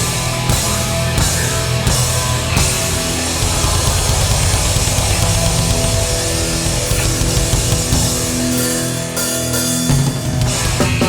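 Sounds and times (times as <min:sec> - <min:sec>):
distorted electric guitars: 0:00.0 - 0:11.0
punk band playing: 0:00.0 - 0:11.0.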